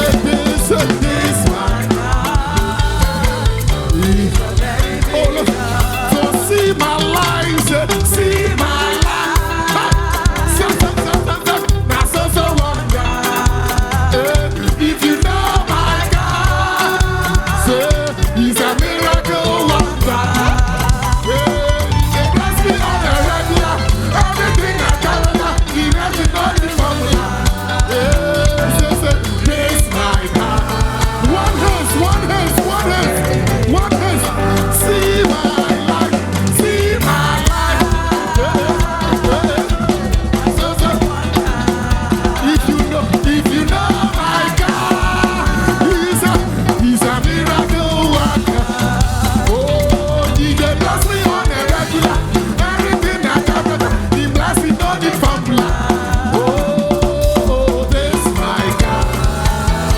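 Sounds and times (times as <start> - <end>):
hand percussion: 0.0 - 59.9
live gospel band music: 0.0 - 59.9
steady drum beat: 0.0 - 59.9.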